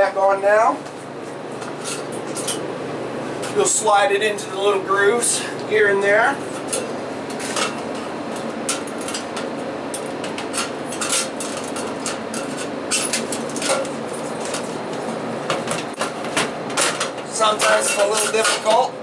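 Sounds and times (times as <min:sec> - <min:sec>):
steady background noise: 0:00.0 - 0:19.0
sheet metal clicks and scrapes: 0:08.7 - 0:14.6.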